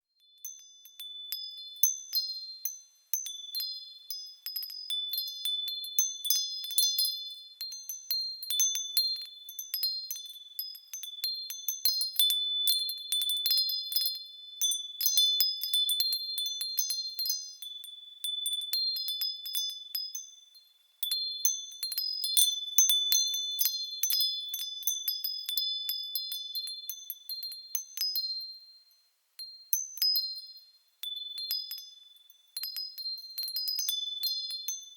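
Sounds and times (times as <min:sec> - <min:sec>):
wind chimes tinkling: 0:00.1 - 0:34.9.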